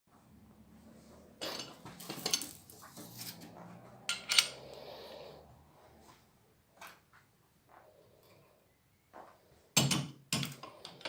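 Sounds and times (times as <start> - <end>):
metal tool clinking and clanking: 1.4 - 4.7.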